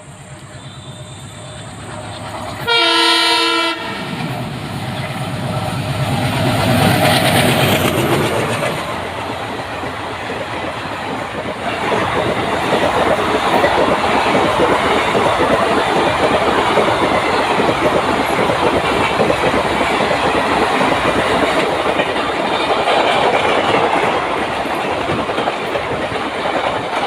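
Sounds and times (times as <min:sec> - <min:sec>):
train rumble: 0:00.0 - 0:27.0
locomotive horn blast: 0:00.5 - 0:04.2
wheels clacking over rail joints: 0:04.0 - 0:27.0.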